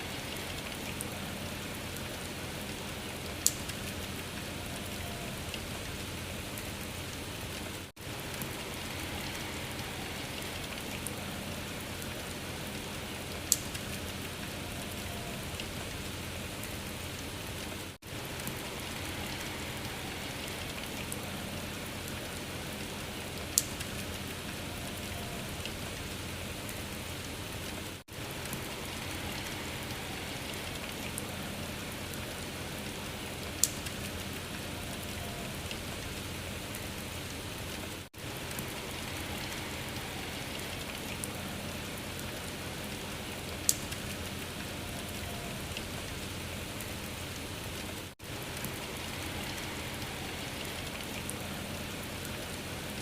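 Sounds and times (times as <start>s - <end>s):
rain-like patter: 0.0s - 53.0s
sharp tick: 3.4s - 3.8s, 13.5s - 13.8s, 23.6s - 23.9s, 43.7s - 44.0s.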